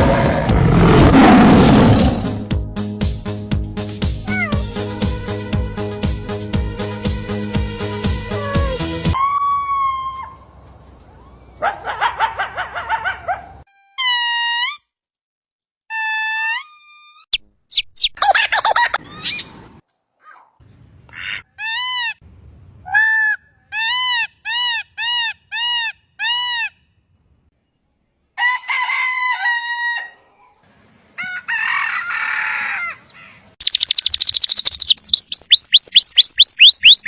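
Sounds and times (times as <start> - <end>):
animal and bird calls: 19.0 - 21.5, 32.7 - 37.0
rooster crowing: 28.4 - 30.4, 31.2 - 33.3
high chirps: 33.6 - 37.0
short arched calls: 33.6 - 37.0.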